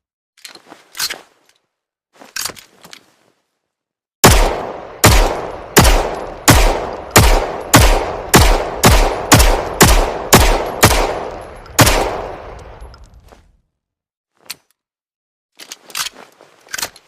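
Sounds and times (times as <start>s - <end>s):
pistol shots echoing: 4.2s - 12.9s.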